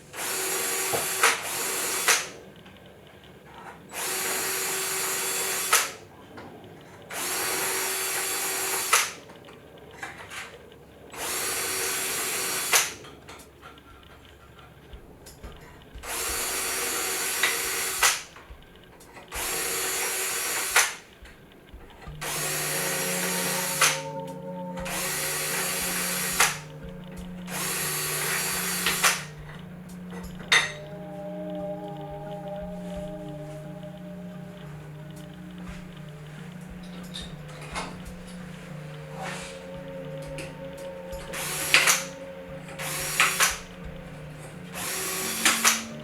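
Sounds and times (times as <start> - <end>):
power drill bursts: 3.9 - 6.0, 7.1 - 9.2, 22.0 - 30.8, 41.2 - 46.0
low pulsing hum: 21.2 - 46.0.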